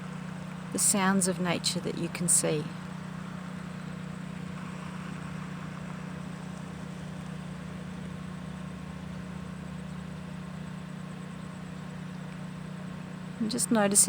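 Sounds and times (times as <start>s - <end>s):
steady low hum: 0.0s - 14.0s
faint background hiss: 13.3s - 14.0s.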